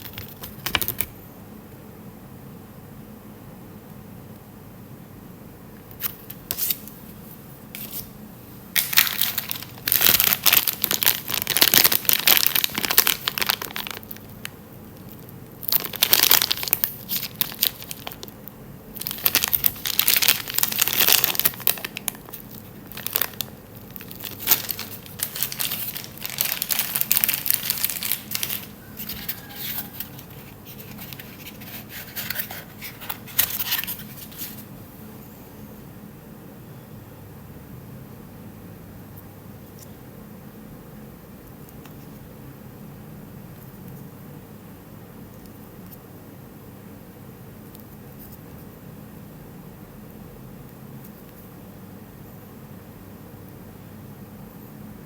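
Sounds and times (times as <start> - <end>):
packaging crinkling and tearing: 0.0 - 1.1, 8.8 - 34.6.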